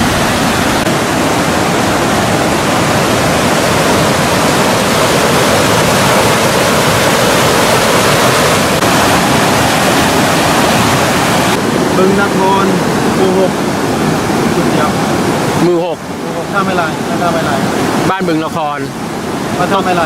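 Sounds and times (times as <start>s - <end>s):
floodwater rushing: 0.0s - 20.0s.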